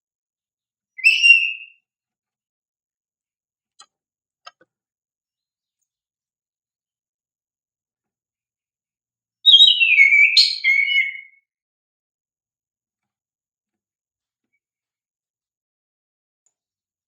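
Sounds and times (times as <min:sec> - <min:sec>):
bird whistled call: 0:01.0 - 0:01.8, 0:09.5 - 0:11.5.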